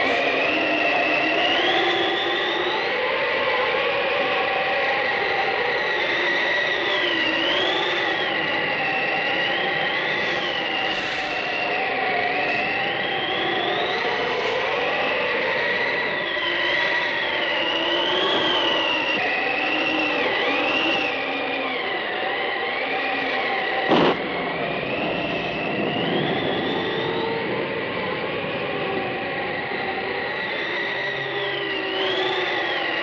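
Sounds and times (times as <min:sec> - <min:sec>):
steady drone: 0:00.0 - 0:32.0
eerie whistle-like tones: 0:00.0 - 0:33.0
sharp crack: 0:23.9 - 0:24.2.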